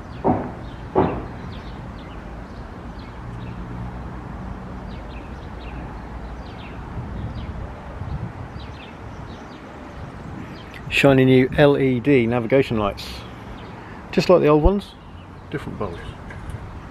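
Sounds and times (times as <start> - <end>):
dull knocks: 0.2 - 1.6.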